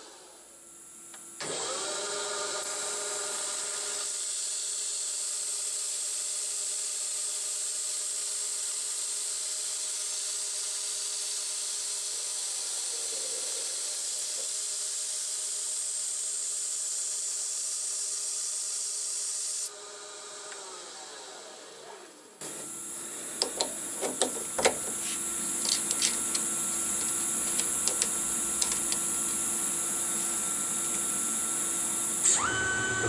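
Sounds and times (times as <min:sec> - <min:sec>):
lathe spindle whine: 0:07.3 - 0:18.4, 0:22.4 - 0:33.0.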